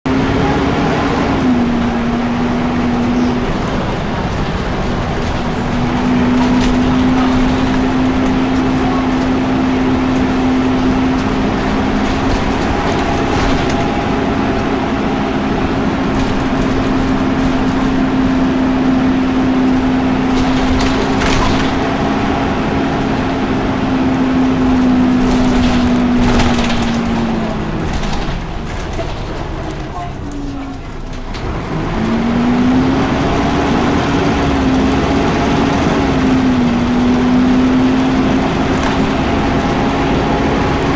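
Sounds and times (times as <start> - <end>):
engine cooling fan whirring: 0.1 - 40.9.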